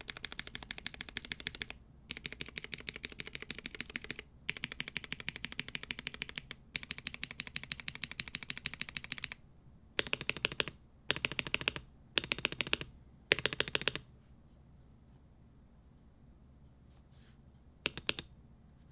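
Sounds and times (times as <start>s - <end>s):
mechanical keyboard typing: 0.0s - 9.4s, 10.0s - 14.0s, 17.8s - 18.3s.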